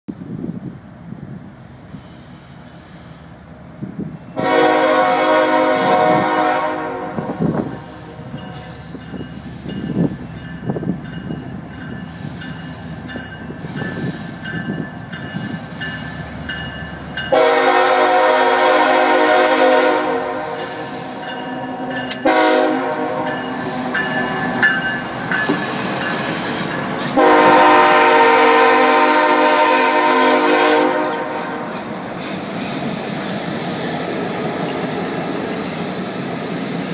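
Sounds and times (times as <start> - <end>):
train wheels rumbling on rails: 0.1 - 36.9
locomotive air horn blasts: 4.4 - 8.6, 17.3 - 23.5, 27.1 - 31.8.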